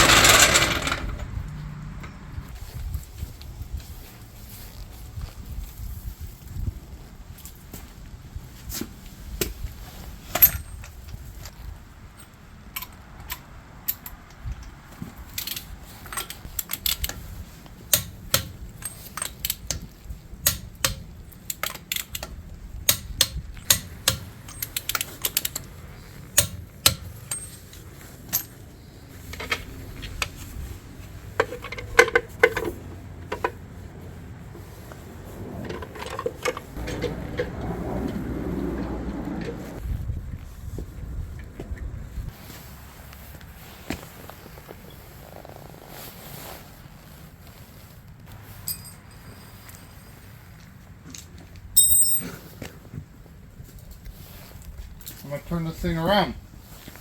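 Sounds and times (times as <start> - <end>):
metallic clinks of hand tools: 51.8 - 52.4.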